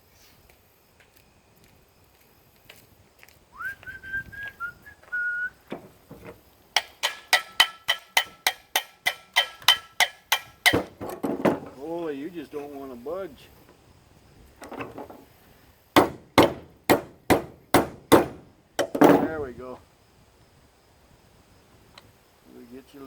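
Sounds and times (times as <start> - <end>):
person whistling: 3.5 - 5.6
hammer beating on metal: 6.8 - 11.0, 16.0 - 19.3.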